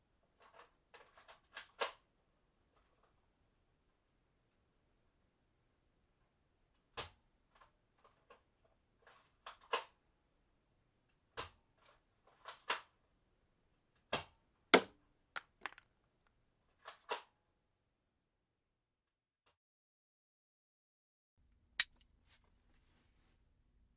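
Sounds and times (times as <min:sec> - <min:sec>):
sharp mechanical weapon clicks: 0:21.8 - 0:22.0.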